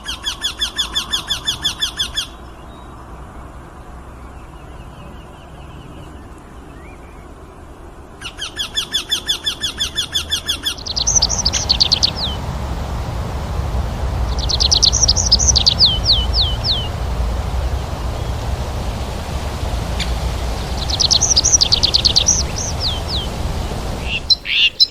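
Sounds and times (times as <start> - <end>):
background hiss: 10.8 - 24.9.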